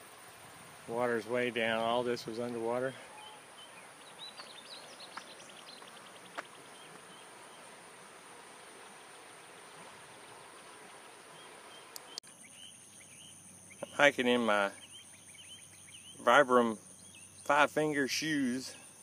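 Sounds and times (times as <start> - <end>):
insects buzzing: 0.0 - 19.0.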